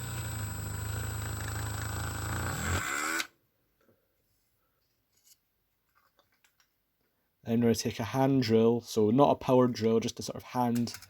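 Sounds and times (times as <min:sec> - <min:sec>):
rotary tool spinning down: 0:00.0 - 0:03.3
rotary tool whining: 0:00.0 - 0:03.3.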